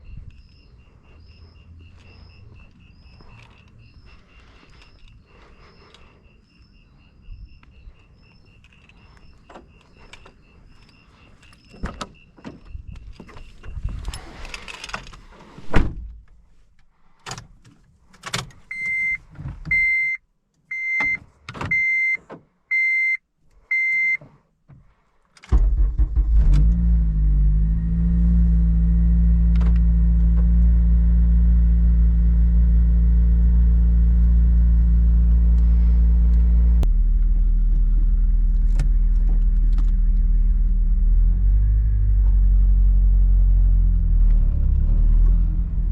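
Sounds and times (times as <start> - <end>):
warning chime beeping: 0.0 - 13.9
car doors and keys clicking: 1.5 - 5.2, 7.6 - 15.4, 17.2 - 20.0
car engine starting and idling: 25.5 - 45.9.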